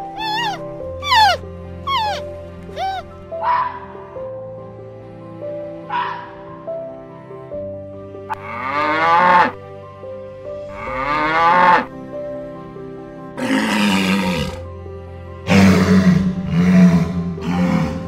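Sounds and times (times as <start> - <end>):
animal calls: 0.0 - 3.8
background music: 0.0 - 18.0.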